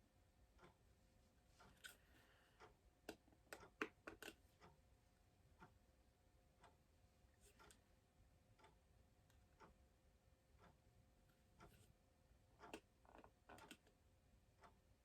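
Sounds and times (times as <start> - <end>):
soft ticks: 0.6 - 0.8, 2.6 - 4.8, 5.6 - 5.8, 6.6 - 6.8, 7.4 - 7.9, 8.6 - 9.8, 10.6 - 12.0, 12.6 - 12.9, 14.6 - 14.8.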